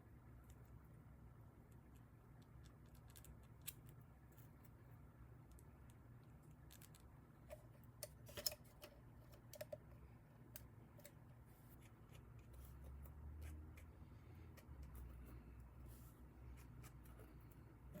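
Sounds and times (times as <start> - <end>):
low steady hum: 0.0 - 18.0
faint small clicks and taps: 5.4 - 9.9.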